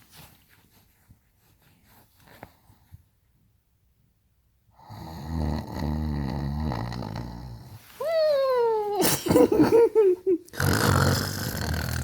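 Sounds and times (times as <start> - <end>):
woman fake snoring: 4.8 - 7.7, 10.5 - 12.0.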